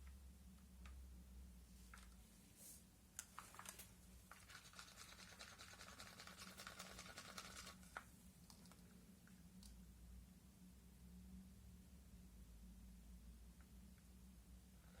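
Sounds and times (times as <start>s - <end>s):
faint rapid scratching: 3.4s - 8.9s.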